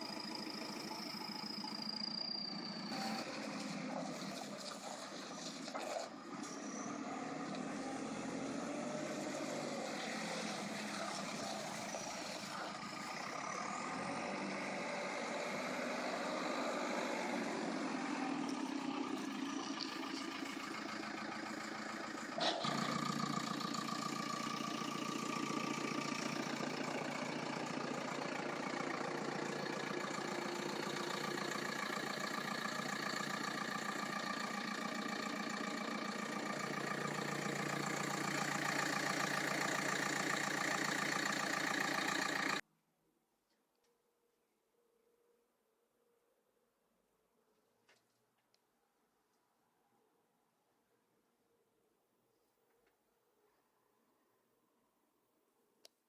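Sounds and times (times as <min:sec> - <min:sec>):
diesel engine running: 0:00.0 - 0:42.6.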